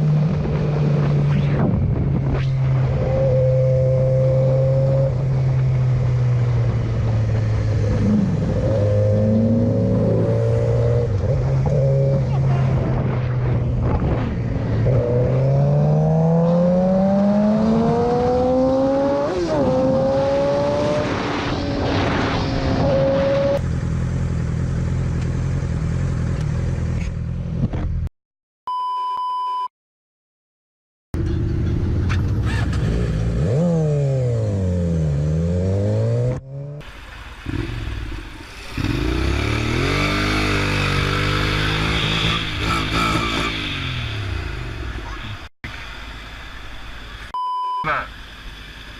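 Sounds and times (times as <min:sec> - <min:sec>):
motorcycle engines revving: 0:00.0 - 0:27.2, 0:31.2 - 0:45.5
steady beep: 0:28.7 - 0:29.7, 0:47.4 - 0:48.1.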